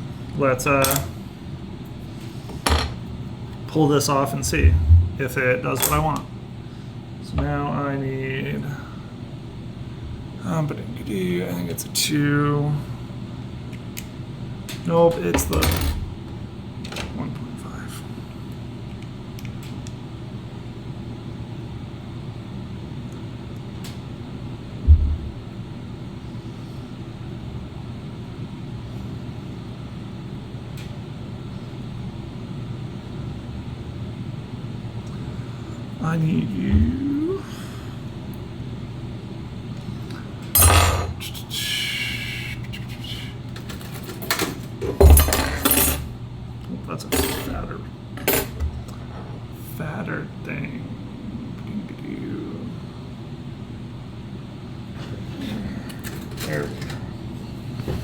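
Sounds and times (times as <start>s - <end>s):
low room rumble: 0.0s - 58.0s
metal hand tools clattering: 40.6s - 41.1s.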